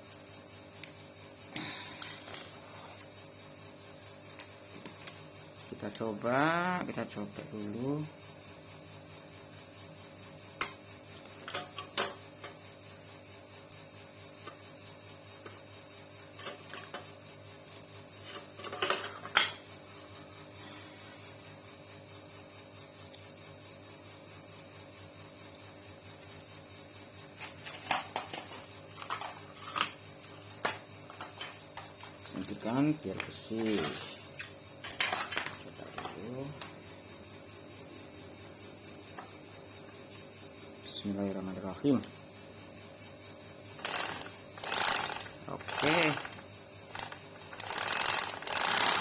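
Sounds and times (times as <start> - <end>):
sewing machine hum: 43.8 - 49.0.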